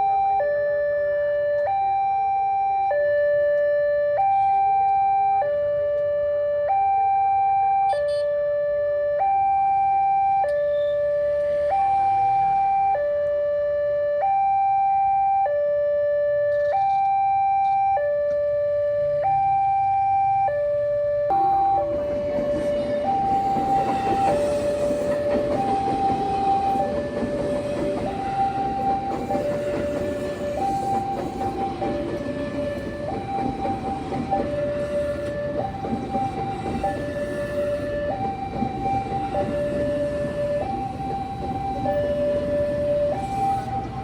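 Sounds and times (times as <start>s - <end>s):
two-tone crossing alarm: 0.0s - 44.0s
train wheels rumbling on rails: 21.8s - 44.0s.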